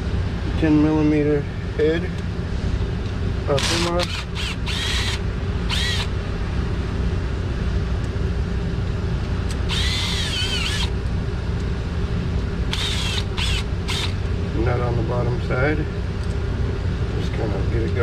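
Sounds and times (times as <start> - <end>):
low hum: 0.0 - 18.0
power tool whining: 3.5 - 6.2, 9.5 - 11.0, 12.7 - 14.3.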